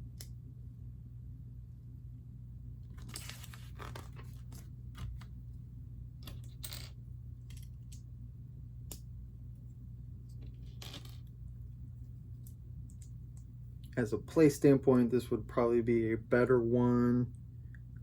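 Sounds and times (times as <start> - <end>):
steady low hum: 0.0 - 18.0
plastic pieces clicking and rattling: 10.4 - 11.3.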